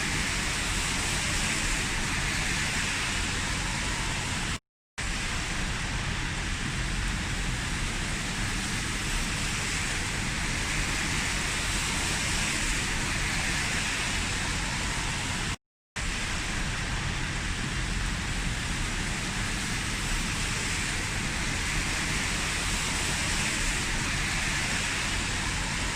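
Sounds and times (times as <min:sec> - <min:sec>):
heavy rain hiss: 0:00.0 - 0:25.9.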